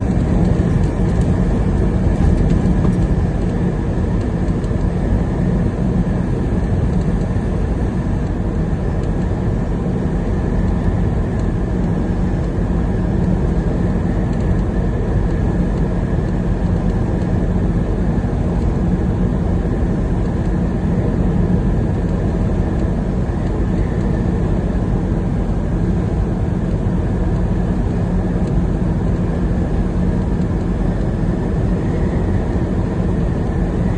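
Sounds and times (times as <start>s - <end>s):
truck engine and road noise: 0.0s - 33.9s.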